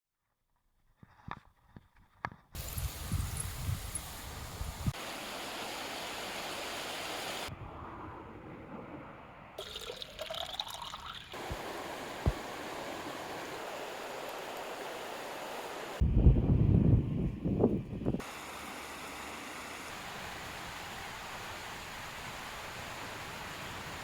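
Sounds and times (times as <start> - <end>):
mountain stream rushing: 3.9 - 7.5, 11.3 - 16.0, 18.2 - 24.0.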